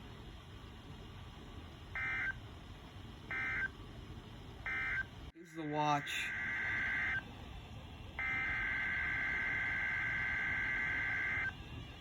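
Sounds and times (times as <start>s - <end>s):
harsh two-tone data burst: 5.6s - 7.2s.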